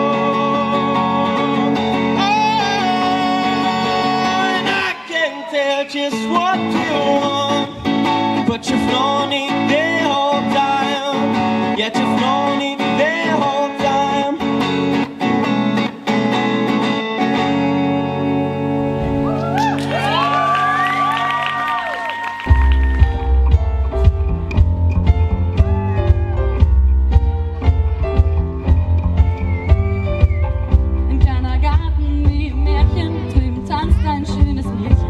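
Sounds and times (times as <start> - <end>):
guitar-backed song: 0.0 - 35.0
pitch-bending lead melody: 18.6 - 21.4.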